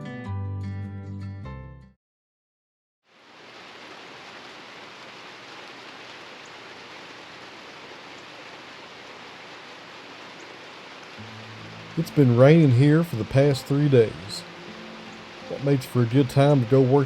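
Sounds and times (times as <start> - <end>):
rain falling: 3.1 - 17.0
guitar music: 11.2 - 17.0.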